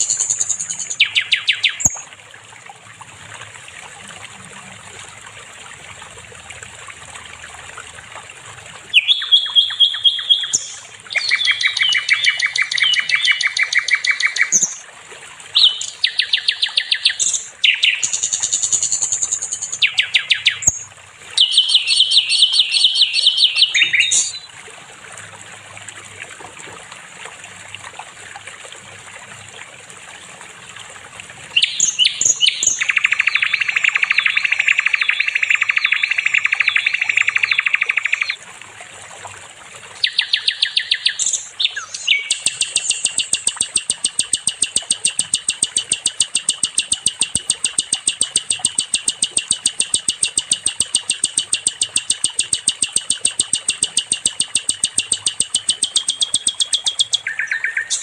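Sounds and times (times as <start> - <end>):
bird singing fast trills: 0.0 - 2.1, 8.9 - 14.8, 15.6 - 24.5, 31.6 - 38.4, 40.0 - 58.0.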